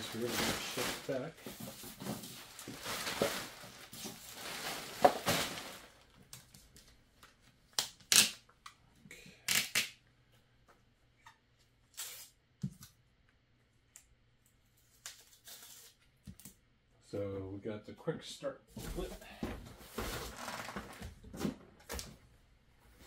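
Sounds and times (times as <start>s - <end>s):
plastic bag rustling and crinkling: 0.0s - 6.2s.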